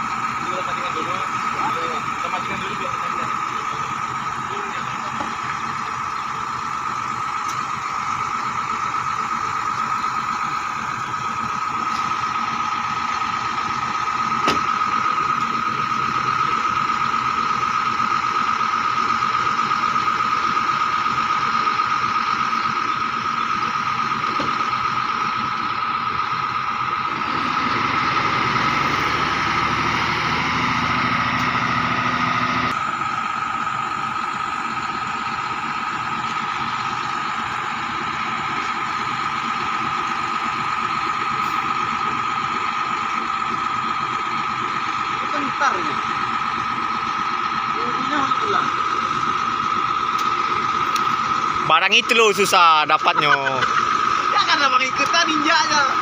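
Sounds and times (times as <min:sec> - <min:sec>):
high-pitched whine: 0:00.0 - 0:56.0
vehicle engine idling: 0:00.0 - 0:56.0.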